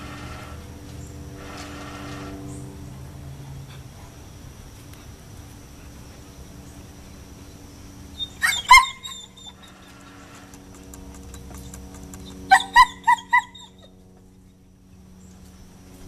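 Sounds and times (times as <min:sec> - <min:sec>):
dog yelping: 0:08.2 - 0:10.2, 0:11.2 - 0:14.0.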